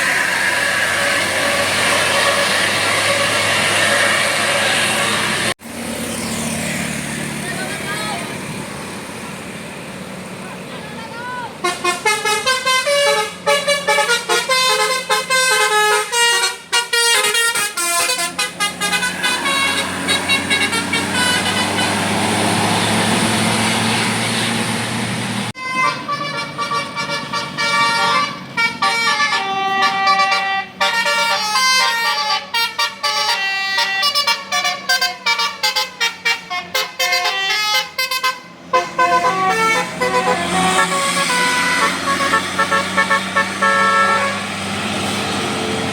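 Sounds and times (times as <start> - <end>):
multi-tone bus horn melody: 0.0 - 5.6, 11.2 - 24.8, 25.5 - 44.6.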